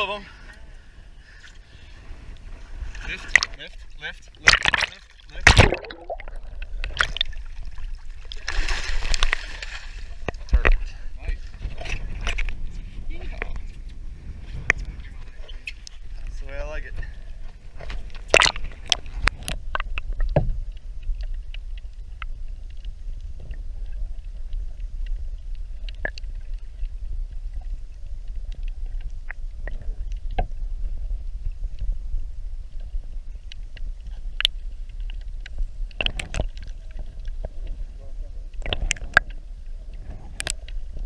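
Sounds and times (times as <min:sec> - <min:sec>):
wind buffeting microphone: 0:10.5 - 0:20.7.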